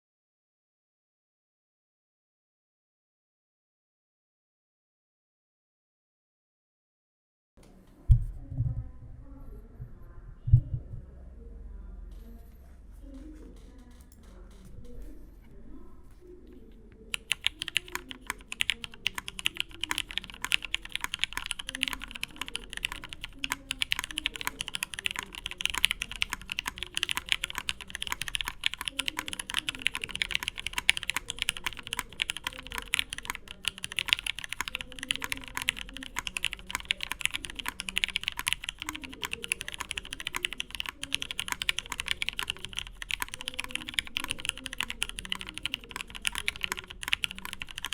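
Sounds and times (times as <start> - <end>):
fast mechanical keyboard typing: 17.0 - 47.9.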